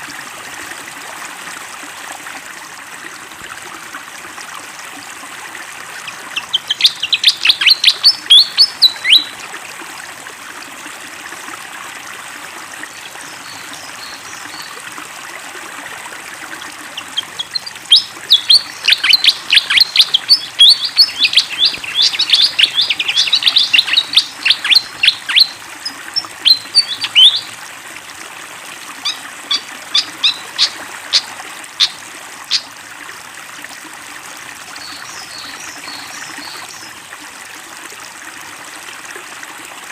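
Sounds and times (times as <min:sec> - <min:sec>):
flowing water: 0:00.0 - 0:39.9
bird chirping rapidly: 0:06.1 - 0:09.3, 0:17.0 - 0:27.5, 0:29.0 - 0:32.6.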